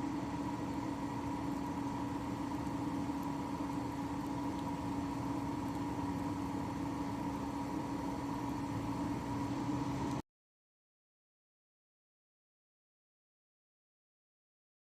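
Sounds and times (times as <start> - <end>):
mechanical hum with two tones: 0.0 - 10.2.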